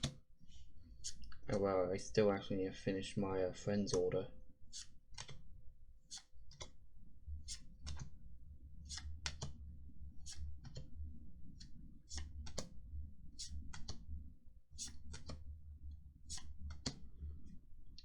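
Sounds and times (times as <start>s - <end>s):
trading cards clicking: 6.1s - 6.7s.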